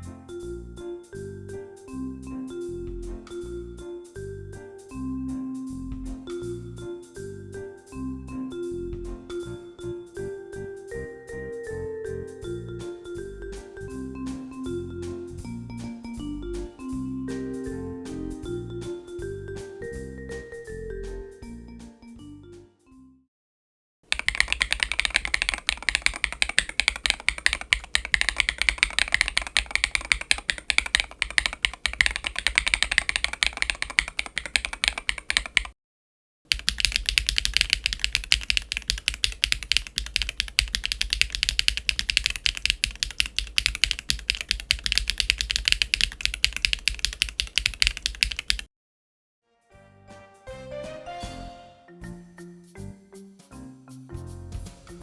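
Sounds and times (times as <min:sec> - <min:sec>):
mechanical keyboard typing: 0:24.1 - 0:35.8, 0:36.5 - 0:48.7.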